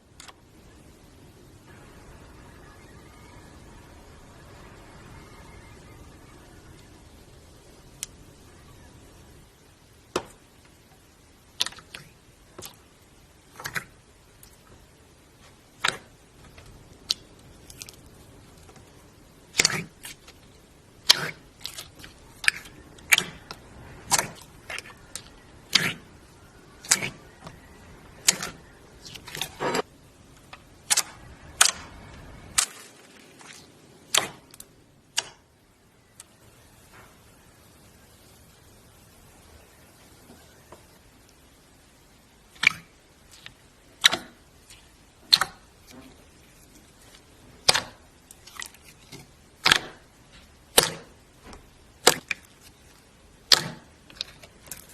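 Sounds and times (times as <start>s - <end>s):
slime popping and clicking: 15.8s - 16.1s, 21.0s - 26.0s, 34.1s - 35.4s, 42.5s - 45.6s, 47.6s - 49.0s, 49.6s - 50.0s, 50.7s - 51.1s, 53.5s - 54.9s.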